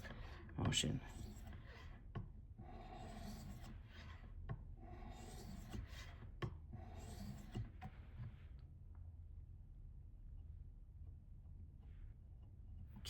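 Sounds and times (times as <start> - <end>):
blade rubbing on sharpening stone: 0.0 - 2.0, 2.6 - 4.2, 4.8 - 6.2, 6.8 - 7.6.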